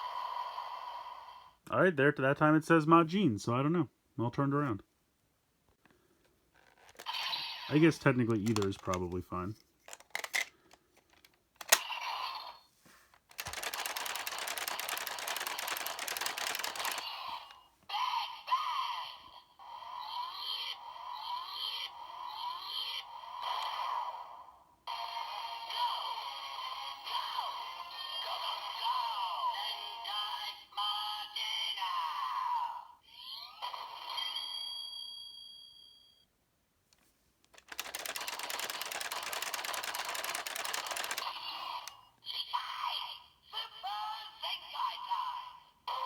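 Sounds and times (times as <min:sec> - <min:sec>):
toy electronic sound effects: 0:06.8 - 0:09.0, 0:13.3 - 0:19.0, 0:37.6 - 0:43.1
synthesized toy voice: 0:07.0 - 0:09.5, 0:13.3 - 0:34.6, 0:37.6 - 0:46.0.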